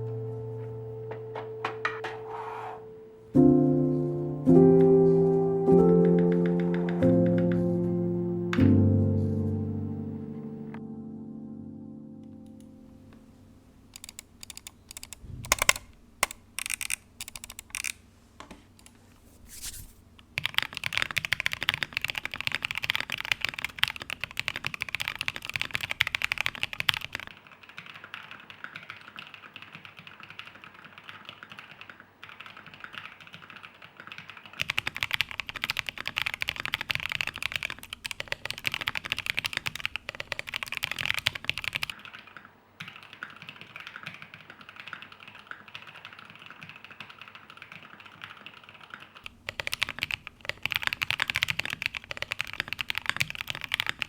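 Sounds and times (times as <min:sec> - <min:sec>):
typing on mechanical keyboard: 0:05.8 - 0:07.7, 0:14.0 - 0:18.0, 0:20.3 - 0:54.0.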